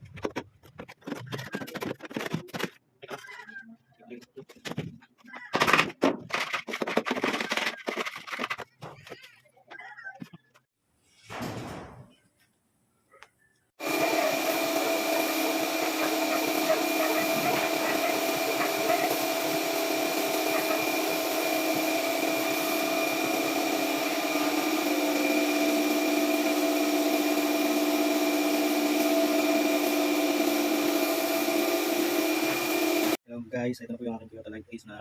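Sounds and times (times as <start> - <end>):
electric motor whining: 13.8 - 33.2.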